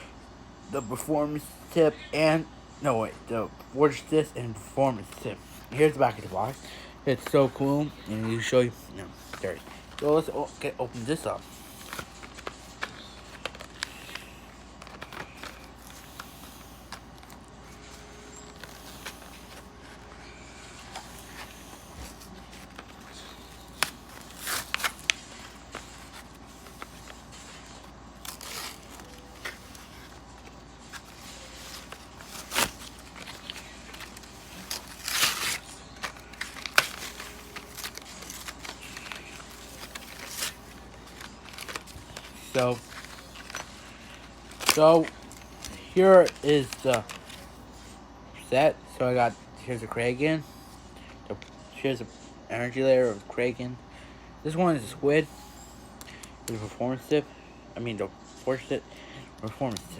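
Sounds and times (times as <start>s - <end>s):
packaging rustling: 5.0s - 47.8s
packaging crinkling and tearing: 11.0s - 47.6s.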